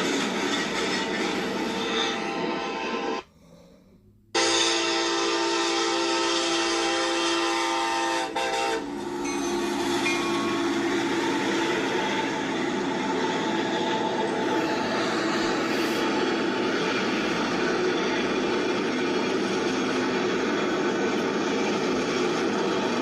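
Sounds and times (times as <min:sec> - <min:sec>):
running train: 0:00.0 - 0:23.0
locomotive air horn: 0:04.3 - 0:12.6.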